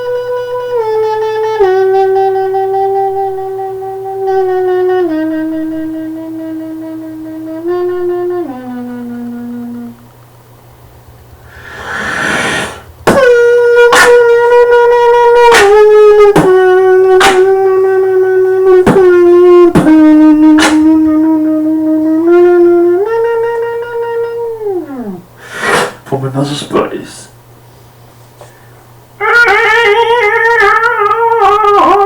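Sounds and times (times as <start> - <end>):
beatboxer's buzzing horn-like tone: 0.0 - 10.1, 11.4 - 26.1, 29.2 - 32.0
breathy rush: 11.4 - 13.0, 25.4 - 26.1
sharp mouth clicks: 25.6 - 26.0.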